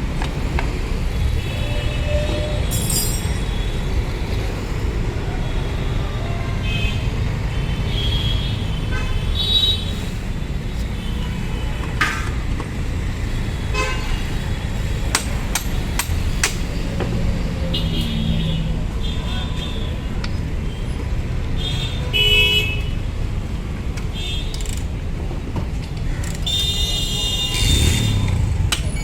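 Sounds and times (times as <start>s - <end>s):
traffic engines rumbling: 0.0s - 29.0s
vehicle horn toots: 26.5s - 28.4s.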